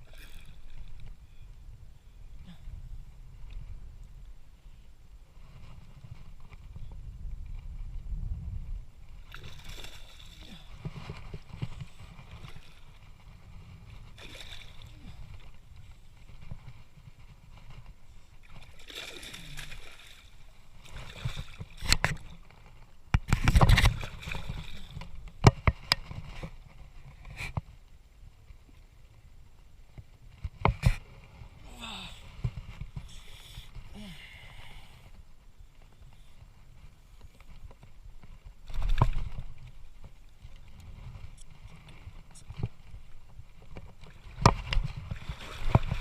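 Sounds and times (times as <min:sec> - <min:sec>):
water sloshing and splashing: 0:09.1 - 0:26.6, 0:37.4 - 0:46.0.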